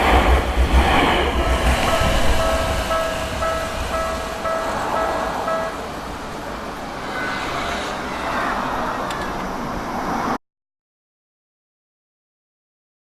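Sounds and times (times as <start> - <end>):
road and rail traffic: 0.0 - 10.4
vehicle passing: 0.0 - 10.4
level crossing warning bell: 0.8 - 9.6.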